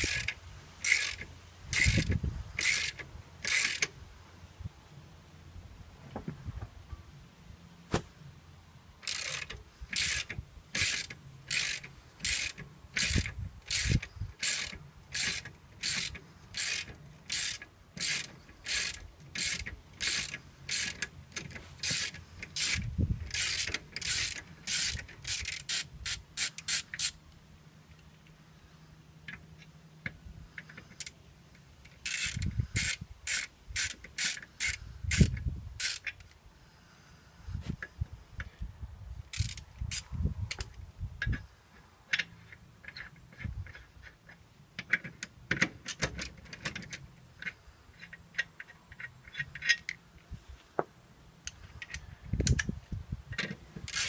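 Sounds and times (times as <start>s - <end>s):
ratchet wrench clicking: 0.0s - 4.0s, 9.0s - 27.2s, 31.8s - 36.4s, 39.3s - 41.4s, 51.5s - 54.0s.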